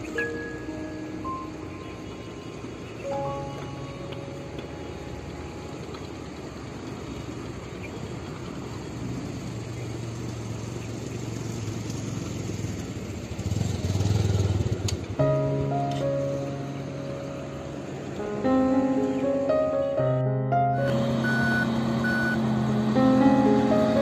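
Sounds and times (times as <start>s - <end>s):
music: 0.0s - 1.9s, 3.0s - 5.4s, 15.2s - 21.0s, 23.0s - 24.0s
traffic noise: 0.0s - 24.0s
vehicle engine running: 0.0s - 24.0s.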